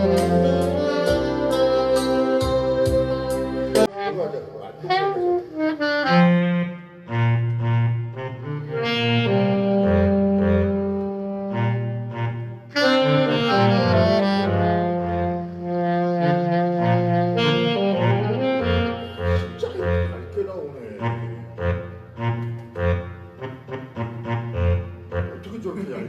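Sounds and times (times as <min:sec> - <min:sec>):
low bass line: 0:00.0 - 0:04.0
saxophone melody: 0:00.0 - 0:26.0.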